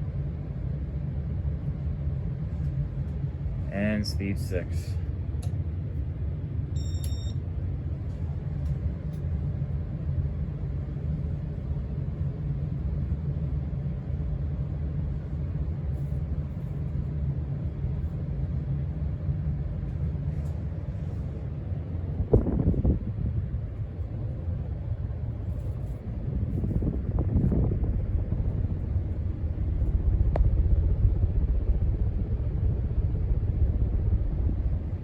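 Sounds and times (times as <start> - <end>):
ceiling fan running: 0.5 - 35.0.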